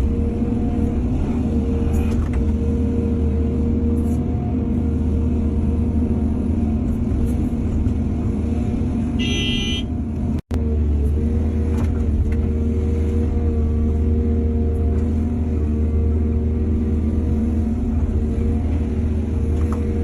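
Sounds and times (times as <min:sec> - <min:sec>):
diesel engine rumbling: 0:00.0 - 0:20.0.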